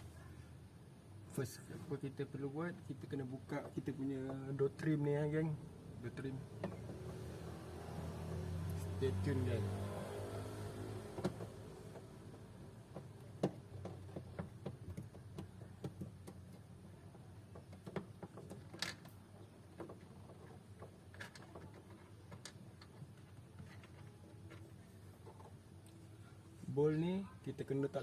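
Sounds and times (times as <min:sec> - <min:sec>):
hand tools clicking and tapping: 0:11.1 - 0:24.7.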